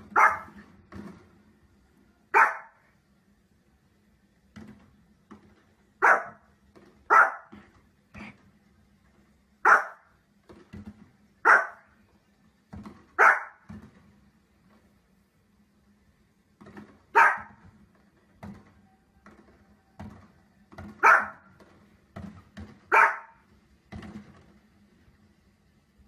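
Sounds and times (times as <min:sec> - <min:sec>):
dog barking: 0:00.0 - 0:00.6, 0:02.3 - 0:02.8, 0:06.0 - 0:06.5, 0:07.1 - 0:07.6, 0:09.6 - 0:10.1, 0:11.4 - 0:11.9, 0:13.2 - 0:13.7, 0:17.1 - 0:17.6, 0:21.0 - 0:21.5, 0:22.9 - 0:23.4.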